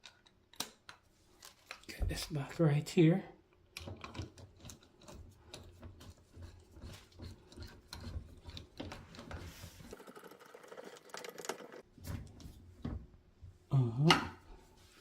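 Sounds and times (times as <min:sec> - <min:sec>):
plastic parts being handled: 0:00.0 - 0:01.9.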